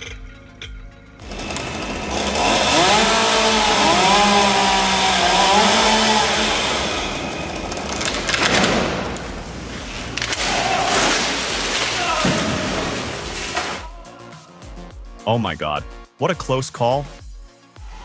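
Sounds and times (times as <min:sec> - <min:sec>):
chainsaw cutting wood: 0:01.2 - 0:13.8.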